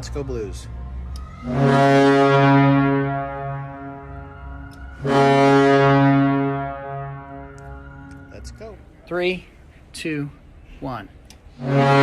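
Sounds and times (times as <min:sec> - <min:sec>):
deep goal horn blasts: 0:01.4 - 0:08.6, 0:11.5 - 0:12.0.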